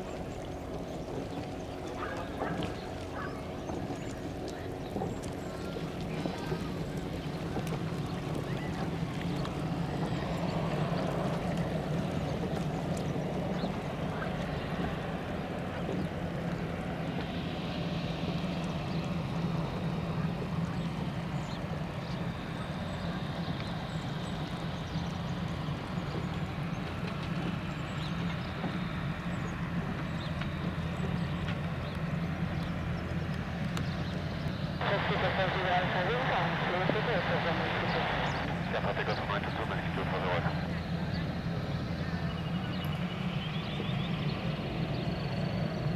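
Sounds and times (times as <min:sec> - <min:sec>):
turboprop engine humming: 0:00.0 - 0:45.9.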